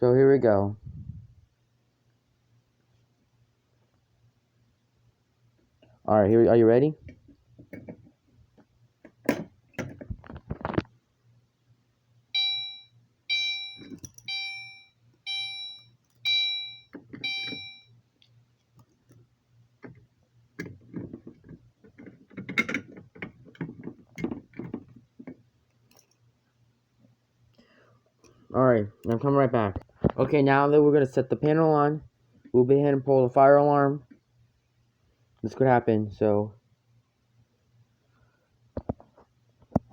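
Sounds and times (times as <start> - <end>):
clicks and handling noises: 7.0 - 11.0, 13.8 - 14.3, 16.9 - 26.3
fire alarm chime dinging: 12.4 - 17.9.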